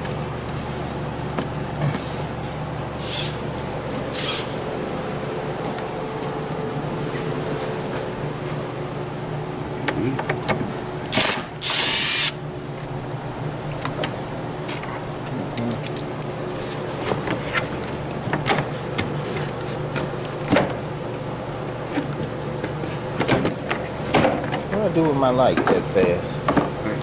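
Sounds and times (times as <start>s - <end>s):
steady low hum: 0.0s - 27.0s
power tool bursts: 11.1s - 12.4s.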